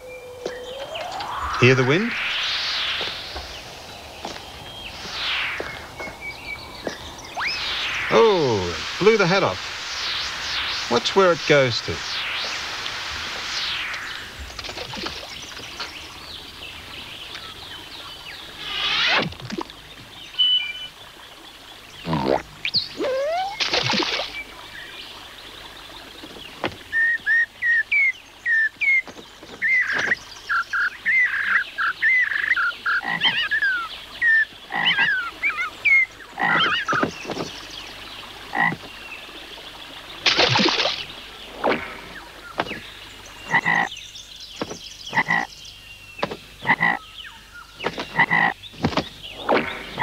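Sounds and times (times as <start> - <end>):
loud hiss: 7.3 - 16.2
cartoon chirping whistle calls: 7.4 - 7.9, 22.1 - 23.8.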